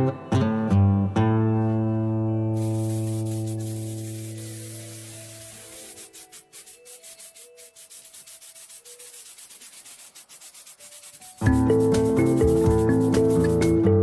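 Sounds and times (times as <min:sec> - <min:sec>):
background music: 0:00.0 - 0:14.0
abrasive rubbing on rusty metal: 0:02.6 - 0:13.7.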